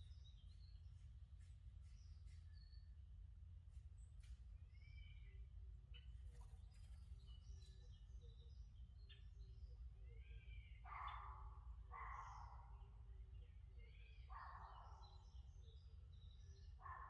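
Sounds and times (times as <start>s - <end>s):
small birds chirping: 11.9s - 17.0s.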